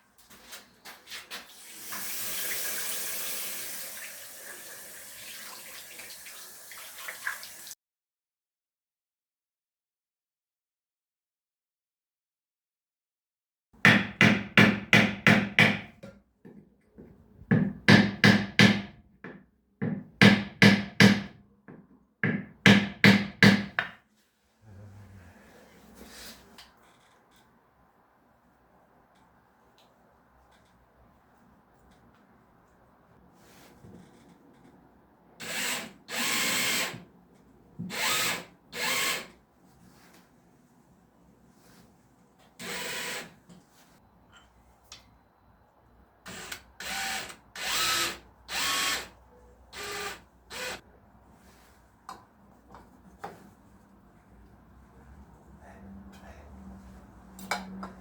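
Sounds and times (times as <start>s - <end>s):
handheld power tool motor: 35.4s - 37.0s, 37.9s - 39.3s, 42.6s - 43.3s, 46.3s - 49.1s, 49.8s - 50.8s.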